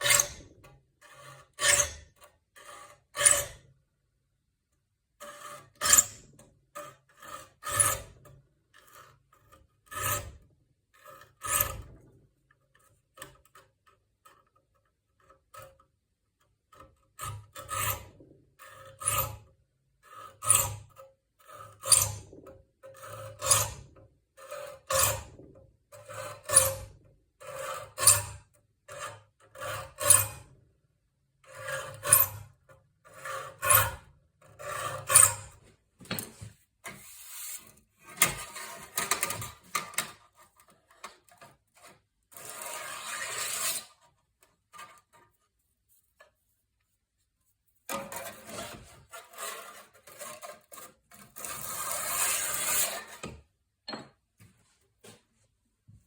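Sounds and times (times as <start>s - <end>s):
file rasping on saw teeth: 6.8s - 8.1s, 20.1s - 22.3s, 22.9s - 23.8s, 31.5s - 32.5s, 33.1s - 35.6s, 47.9s - 53.3s.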